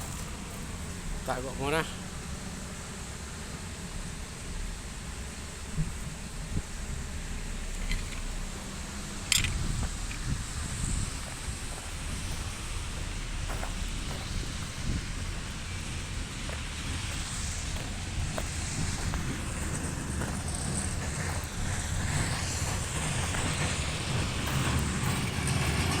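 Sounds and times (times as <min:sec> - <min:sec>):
heavy engine running: 0:00.0 - 0:26.0
wind noise on microphone: 0:05.6 - 0:07.1, 0:07.7 - 0:26.0.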